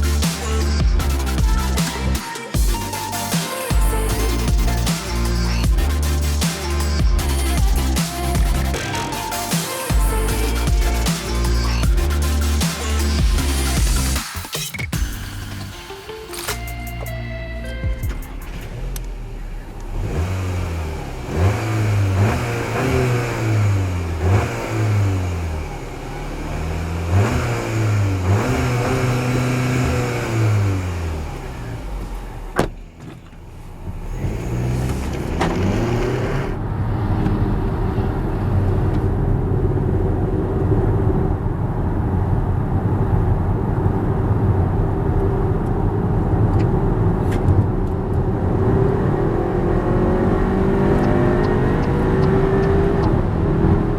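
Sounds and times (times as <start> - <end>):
car engine accelerating: 17.0 - 53.9
road and wind noise: 17.6 - 53.9
gear change click: 32.0 - 36.5, 51.0 - 53.2.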